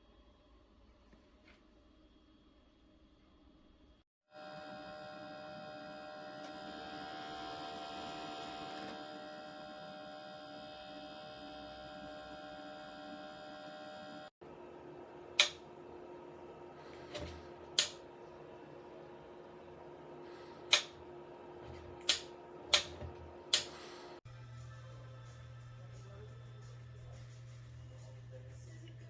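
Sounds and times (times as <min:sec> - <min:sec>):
humidifier electrical hum: 0:00.0 - 0:29.0
sharp clicks: 0:15.4 - 0:15.6
faint low hum: 0:24.3 - 0:29.0.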